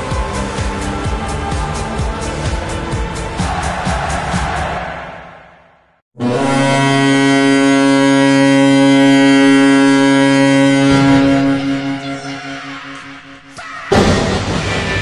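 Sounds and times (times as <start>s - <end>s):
goal horn blast: 6.5s - 12.2s, 13.9s - 15.0s.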